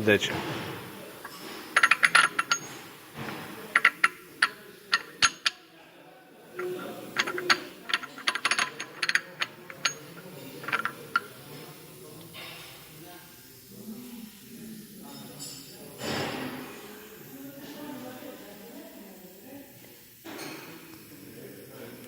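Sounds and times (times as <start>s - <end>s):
metal gearbox parts clinking: 1.2s - 5.6s, 6.5s - 11.6s.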